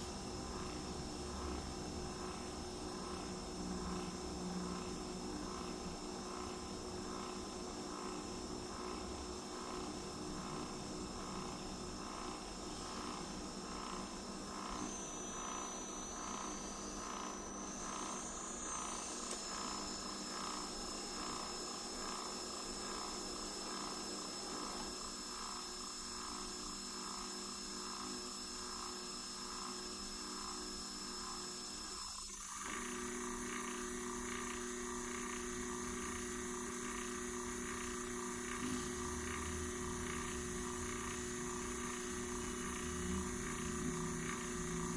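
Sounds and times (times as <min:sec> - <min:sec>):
machine high whine: 0:00.0 - 0:44.9
pulsing motor tone: 0:10.4 - 0:23.1, 0:31.7 - 0:44.9.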